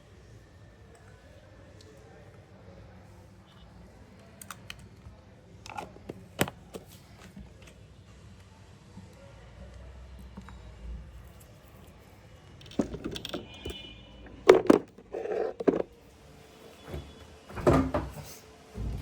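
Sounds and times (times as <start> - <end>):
household objects clattering: 12.6 - 16.0.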